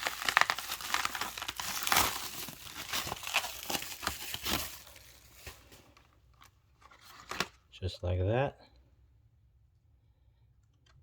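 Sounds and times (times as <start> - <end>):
plastic packaging crinkling: 0.0 - 7.6.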